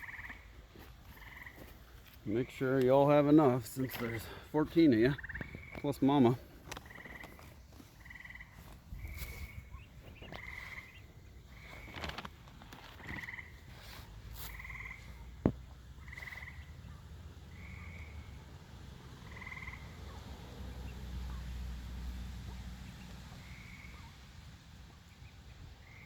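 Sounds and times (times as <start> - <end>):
frogs calling: 0.0 - 24.5, 25.6 - 26.0.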